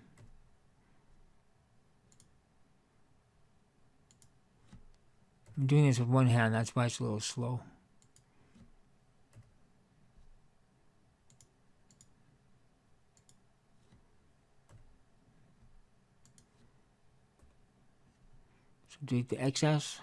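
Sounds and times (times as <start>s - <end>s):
computer mouse clicking: 2.1s - 2.4s, 4.0s - 5.6s, 8.0s - 9.6s, 11.2s - 12.2s, 13.1s - 14.0s, 14.6s - 15.0s, 16.2s - 16.7s.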